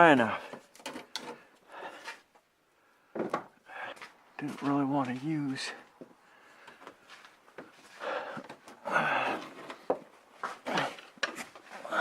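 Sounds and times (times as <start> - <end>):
heavy breaths or grunts: 7.9 - 9.6, 10.4 - 11.1, 11.7 - 12.0.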